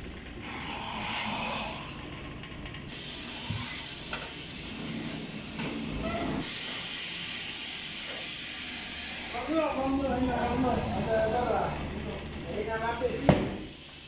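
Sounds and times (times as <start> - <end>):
compressed air hissing: 0.4 - 2.1, 2.9 - 11.8, 13.3 - 14.0.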